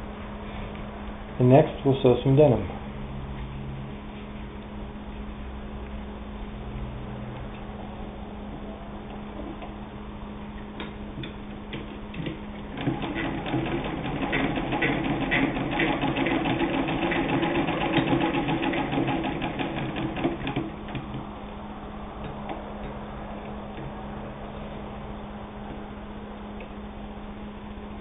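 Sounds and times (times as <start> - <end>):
sewing machine clicking: 12.2 - 21.1.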